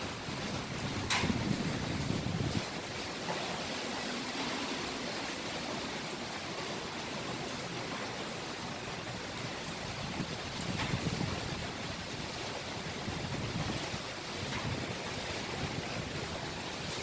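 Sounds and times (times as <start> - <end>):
strong wind rushing: 0.0 - 3.1, 9.9 - 16.8.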